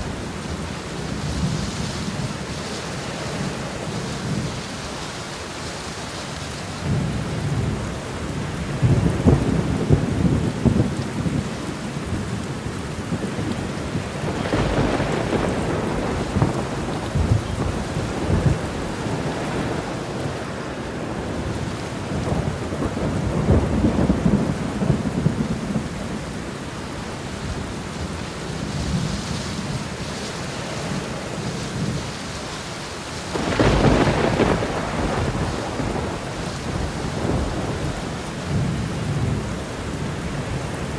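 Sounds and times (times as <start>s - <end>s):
steady rain: 0.0s - 40.9s
rolling thunder: 6.8s - 30.2s, 33.2s - 40.9s.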